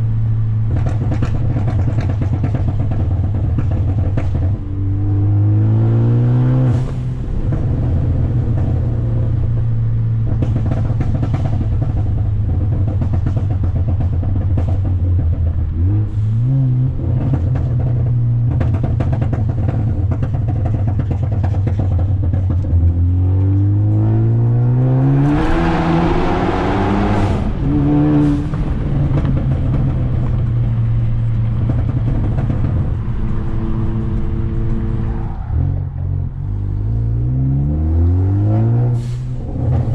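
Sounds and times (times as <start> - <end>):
exhaust pops and crackles: 0.0 - 4.9, 6.7 - 16.2, 16.9 - 35.3
car engine and exhaust: 0.0 - 39.9
engine revving with rasping burst: 15.6 - 39.9.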